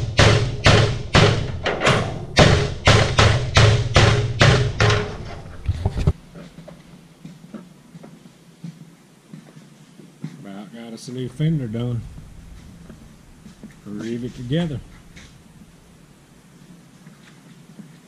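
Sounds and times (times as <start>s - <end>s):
music with percussive beat and bass: 0.0s - 5.1s
faint room sounds: 5.0s - 18.0s.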